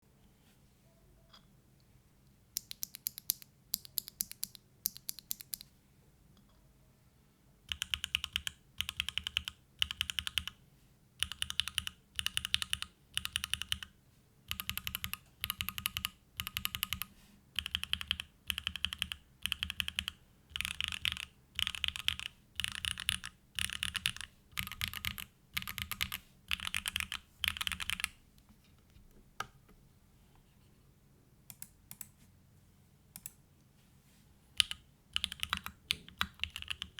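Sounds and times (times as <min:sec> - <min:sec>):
typing on mechanical keyboard: 0:07.7 - 0:10.6, 0:11.2 - 0:13.9, 0:14.5 - 0:28.2, 0:34.6 - 0:36.9.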